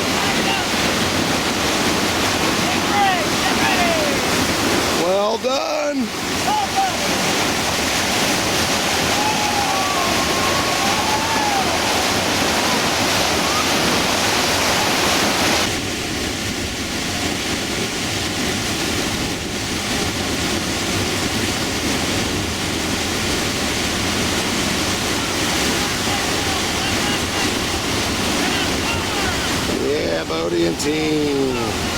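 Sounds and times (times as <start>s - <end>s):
whitewater rapid rushing: 0.0s - 31.9s.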